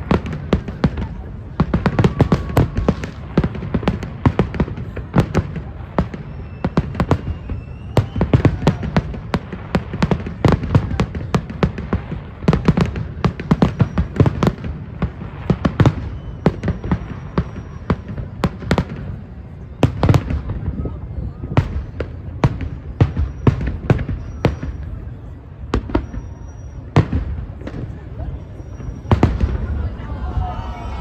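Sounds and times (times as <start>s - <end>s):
fireworks cracks and bangs: 0.0s - 25.0s, 25.7s - 31.0s
rocket whistles: 6.0s - 9.1s, 13.5s - 14.7s, 15.5s - 18.6s, 22.9s - 25.2s, 25.8s - 27.1s.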